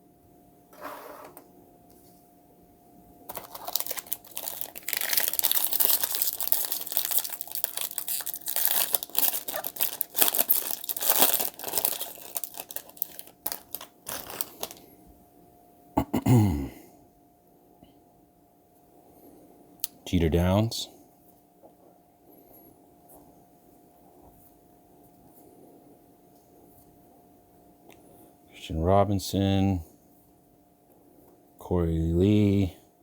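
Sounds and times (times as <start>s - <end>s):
wrapper crinkling and tearing: 3.3s - 14.8s.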